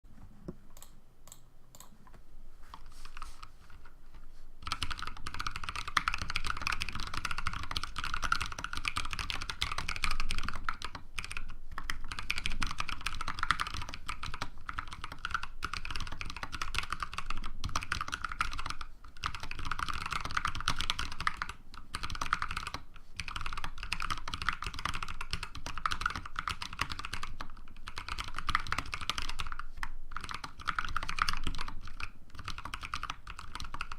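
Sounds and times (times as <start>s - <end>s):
mechanical keyboard typing: 4.6s - 33.9s.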